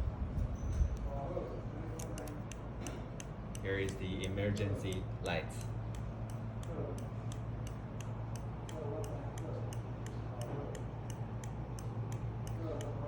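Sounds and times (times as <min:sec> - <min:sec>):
steady low hum: 0:00.0 - 0:13.0
flasher relay clicking: 0:01.8 - 0:13.0.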